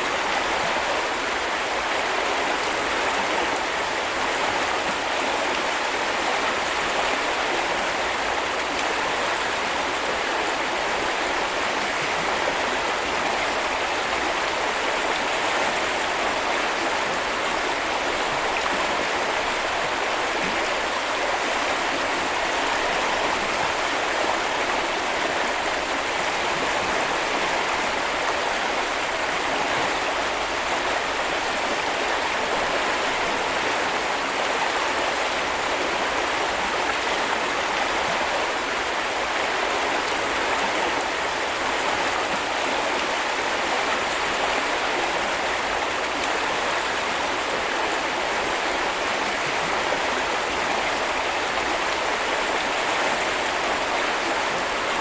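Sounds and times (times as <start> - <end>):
stream rushing and babbling: 0.0 - 55.0.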